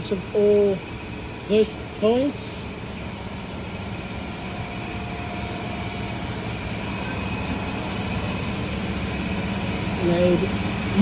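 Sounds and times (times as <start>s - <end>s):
machine humming: 0.0s - 11.0s.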